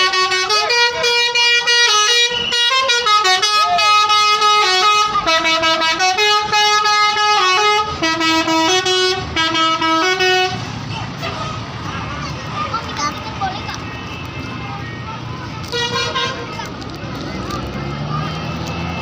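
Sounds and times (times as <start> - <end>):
musical air horn tune: 0.0 - 10.6.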